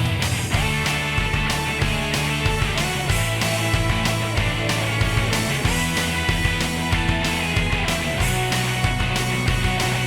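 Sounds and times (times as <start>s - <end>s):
rock music: 0.0s - 10.0s.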